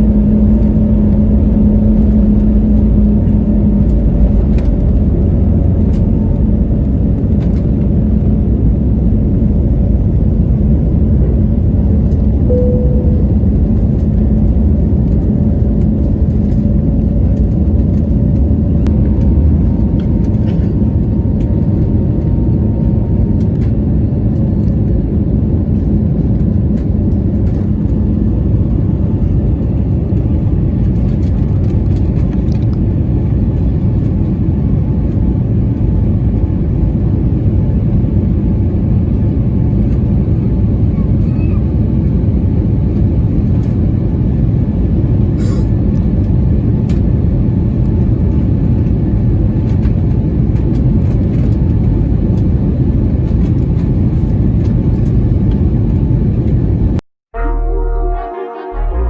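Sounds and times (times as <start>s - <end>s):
airliner engines rumbling in cabin: 0.0s - 57.0s
brief high tone: 12.5s - 13.8s, 57.4s - 59.0s.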